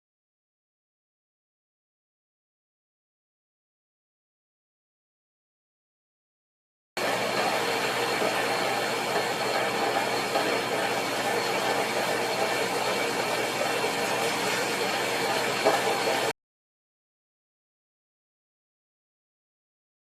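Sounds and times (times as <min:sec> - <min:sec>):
electric meat grinder whirring: 0:07.0 - 0:16.3.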